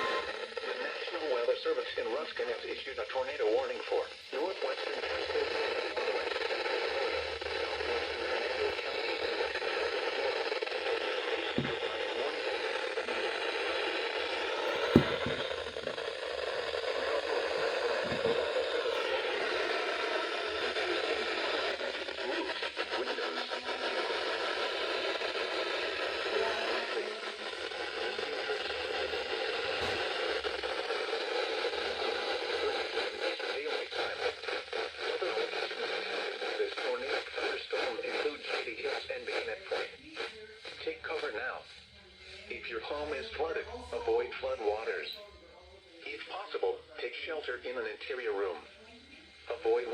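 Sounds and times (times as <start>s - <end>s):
radio static hiss: 0.0s - 49.9s.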